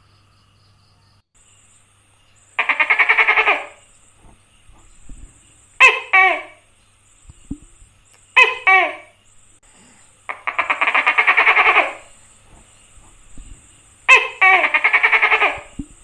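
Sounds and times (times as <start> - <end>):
animal rattling call: 2.3 - 6.6, 7.4 - 9.2, 10.3 - 16.0.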